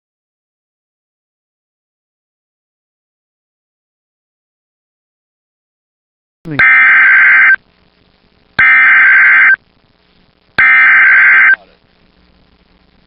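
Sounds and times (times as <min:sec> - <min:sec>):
warbling digital data tones: 0:06.5 - 0:07.6, 0:08.6 - 0:09.6, 0:10.6 - 0:11.6.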